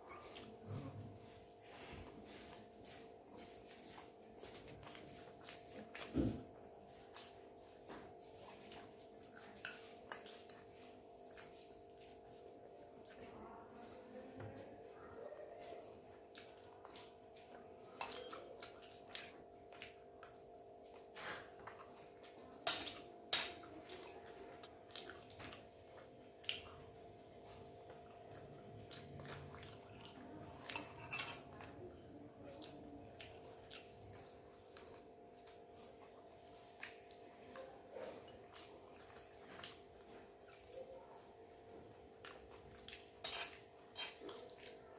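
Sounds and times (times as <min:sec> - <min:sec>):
utensils clinking against plate: 0:18.0 - 0:18.6, 0:22.6 - 0:23.7, 0:30.6 - 0:31.7, 0:43.0 - 0:44.5.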